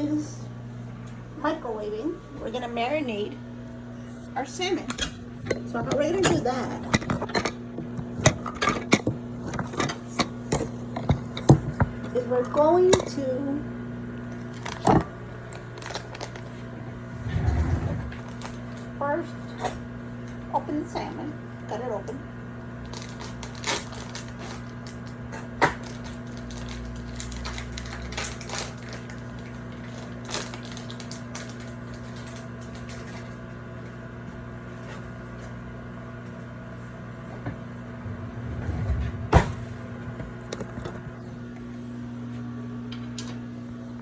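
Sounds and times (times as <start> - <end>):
microwave oven humming: 0.0 - 44.0
packaging crinkling: 15.6 - 16.6, 22.8 - 25.2, 25.8 - 33.3.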